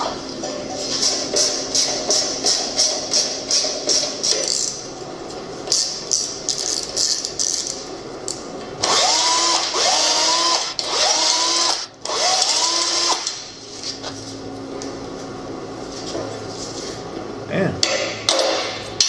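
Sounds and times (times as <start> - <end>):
power drill whining: 8.8 - 13.3.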